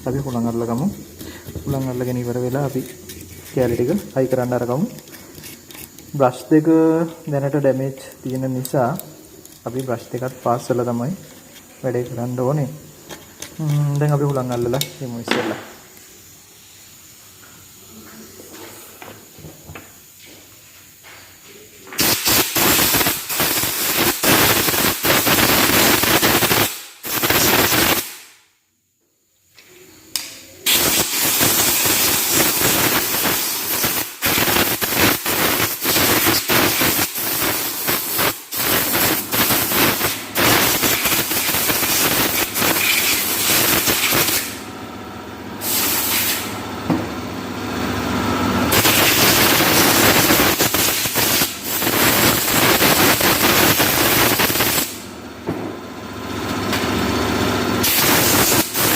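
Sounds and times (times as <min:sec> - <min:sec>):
compressed air blow gun hissing: 0:00.0 - 0:14.9, 0:22.0 - 0:28.2, 0:30.6 - 0:44.6, 0:45.6 - 0:46.5, 0:48.7 - 0:55.0, 0:57.8 - 0:58.9.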